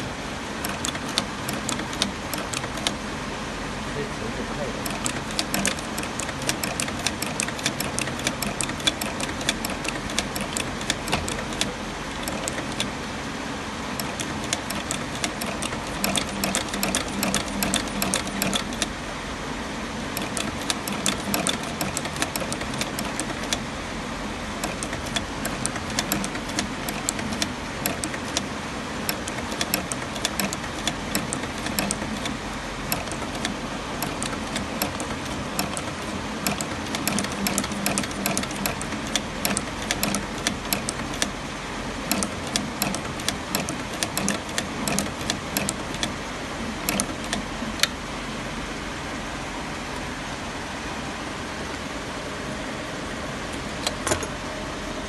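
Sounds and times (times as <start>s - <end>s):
sewing machine stitching: 0.6s - 3.0s, 4.1s - 13.0s, 14.0s - 19.0s, 20.2s - 23.7s, 24.6s - 41.4s, 42.0s - 46.2s, 46.8s - 47.9s.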